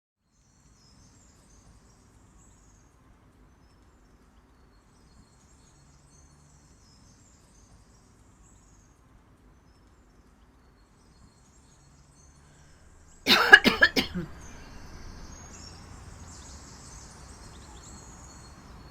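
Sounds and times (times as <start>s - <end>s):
distant bird chirps: 9.8s - 18.9s.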